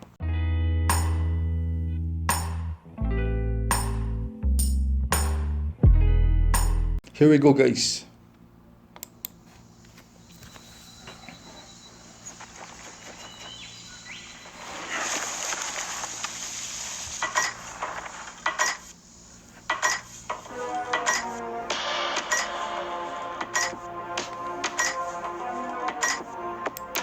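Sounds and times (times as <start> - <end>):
sharp clicks: 9.0 - 9.4
music soundtrack through phone: 20.4 - 27.0.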